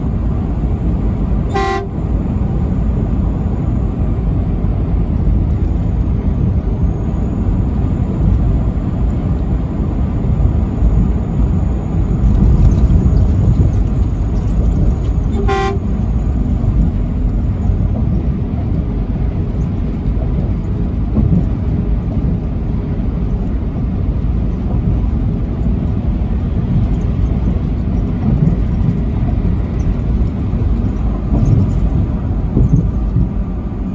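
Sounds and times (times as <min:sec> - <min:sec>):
road and engine rumble: 0:00.0 - 0:33.9
truck horn blasts: 0:01.4 - 0:02.8, 0:15.2 - 0:16.2.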